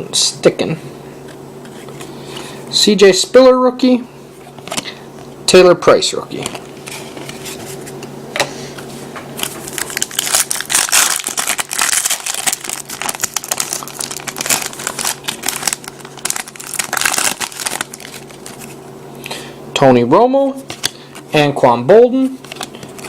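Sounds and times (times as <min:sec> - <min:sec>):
foil wrapper tearing and crinkling: 0:09.4 - 0:18.8.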